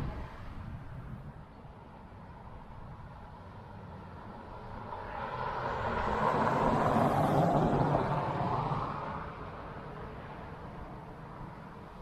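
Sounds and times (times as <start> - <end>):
wind: 0.0 - 12.0.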